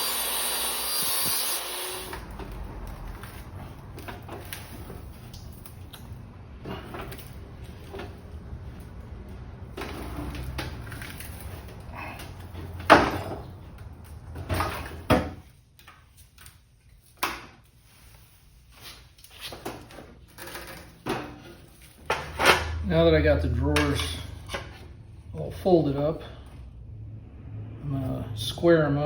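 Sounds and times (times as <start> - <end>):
low hum: 2.0 - 15.1, 21.8 - 28.9
sheet steel clanking: 20.6 - 25.0.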